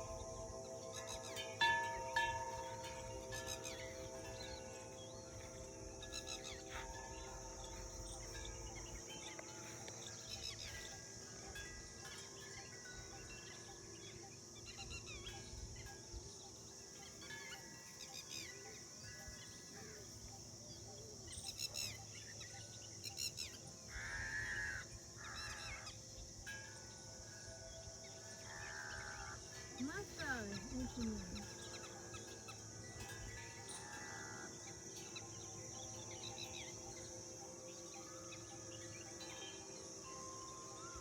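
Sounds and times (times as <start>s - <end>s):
birds chirping: 0.0s - 41.0s
high-pitched insect drone: 0.0s - 41.0s.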